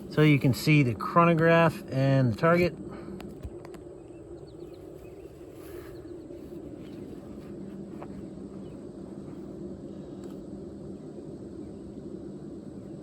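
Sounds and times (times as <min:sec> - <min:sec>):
steady low hum: 0:00.0 - 0:13.0
faint bird chirps: 0:03.9 - 0:07.4.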